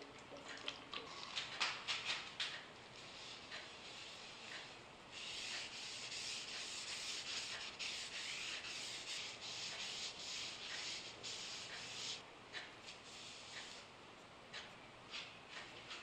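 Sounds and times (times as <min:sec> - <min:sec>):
rubbing on wood: 0:03.0 - 0:12.2.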